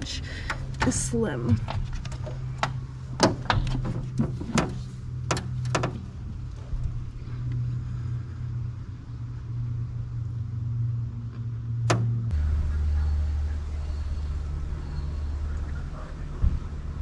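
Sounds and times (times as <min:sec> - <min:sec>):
constant low hum: 0:00.0 - 0:17.0.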